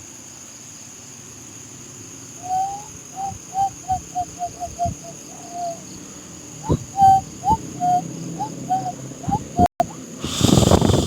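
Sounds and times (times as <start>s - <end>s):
high insect drone: 0.0s - 11.0s
short whistled notes: 2.4s - 5.8s, 6.6s - 10.0s.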